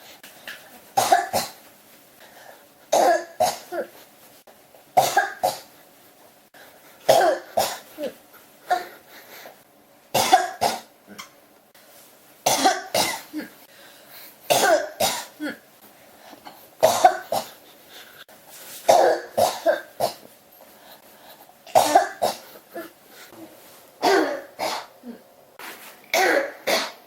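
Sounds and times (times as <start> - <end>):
person coughing: 1.0 - 1.6, 2.9 - 4.0, 5.0 - 5.7, 7.1 - 9.0, 10.2 - 11.3, 12.5 - 13.6, 14.5 - 15.6, 16.8 - 17.6, 18.9 - 20.3, 21.7 - 23.0, 24.0 - 25.2, 26.1 - 27.0.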